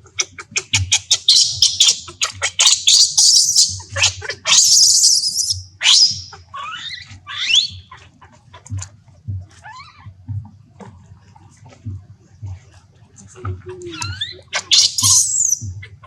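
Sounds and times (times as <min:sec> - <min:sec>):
baby monkey crying: 0:00.7 - 0:08.1, 0:13.9 - 0:16.0.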